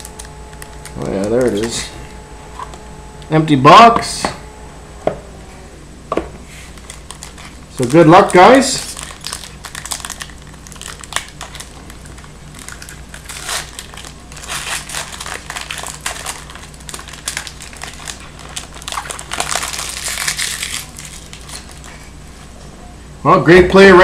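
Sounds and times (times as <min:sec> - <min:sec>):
card pack wrapper crinkling: 0:00.0 - 0:02.8, 0:06.7 - 0:22.1
low electrical hum: 0:00.0 - 0:24.0.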